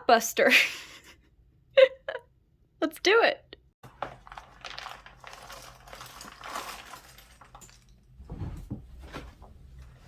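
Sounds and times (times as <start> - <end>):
puzzle pieces rattling in box: 3.9 - 7.9.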